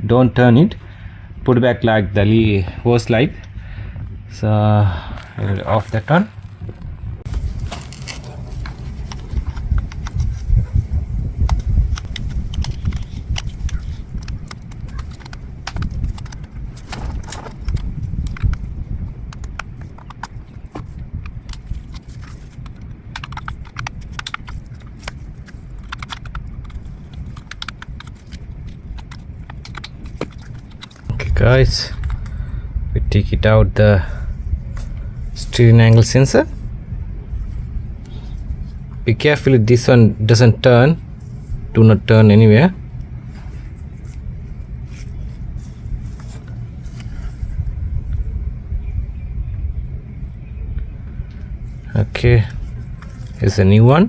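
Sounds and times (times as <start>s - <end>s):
low rumble: 0.7s - 53.9s
plastic clips clicking: 19.3s - 31.1s.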